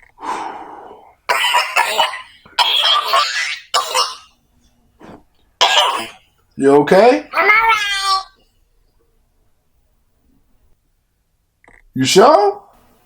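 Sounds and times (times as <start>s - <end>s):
person coughing: 1.3s - 4.3s, 5.6s - 6.2s.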